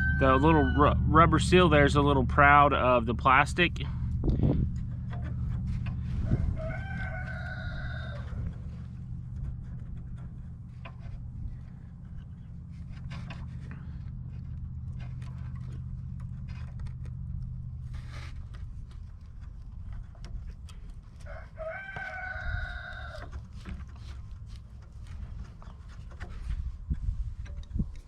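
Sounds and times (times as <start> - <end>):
rooster crowing: 0.0 - 1.1, 6.2 - 8.8, 21.2 - 23.3
low steady hum: 0.0 - 28.0.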